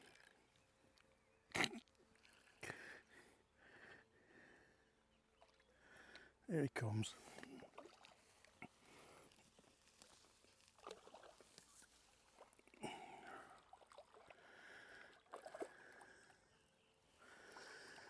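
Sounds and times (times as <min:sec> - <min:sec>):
water splashing and sloshing: 0:07.1 - 0:16.4.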